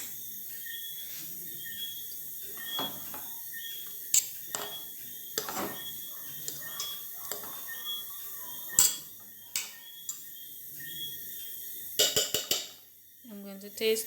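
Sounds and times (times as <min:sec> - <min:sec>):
metal utensil clinking on pot: 0:04.2 - 0:04.8, 0:08.7 - 0:09.7.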